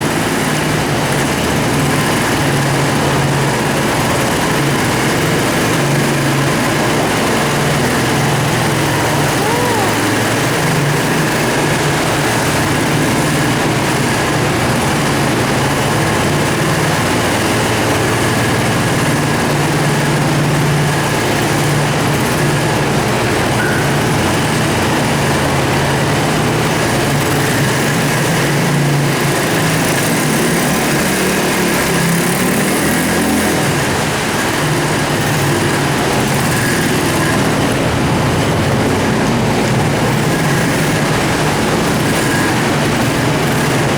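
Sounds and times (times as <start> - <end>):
two-stroke engine running: 0.0 - 43.9.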